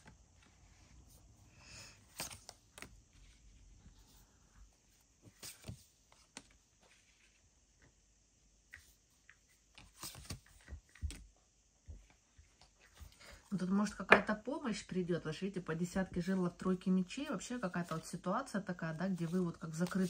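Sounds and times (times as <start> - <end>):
soft rustle: 0.0 - 7.9, 15.9 - 20.0.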